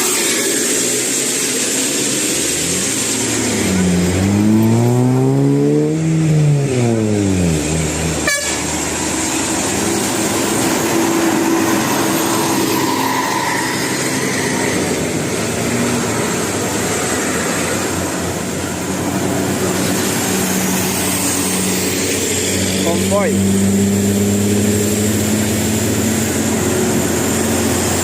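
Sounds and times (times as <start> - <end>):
road noise: 0.0 - 28.0
musical bus horns: 7.4 - 9.1.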